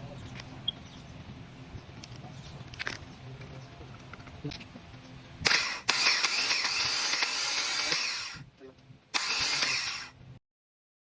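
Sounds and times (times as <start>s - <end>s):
electric starter motor whirring: 5.4s - 8.5s, 9.1s - 10.2s.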